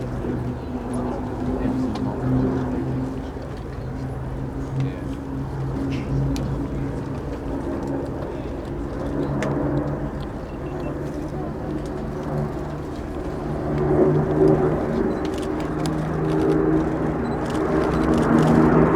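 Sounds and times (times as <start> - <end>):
piston aircraft engines droning: 0.0 - 18.9.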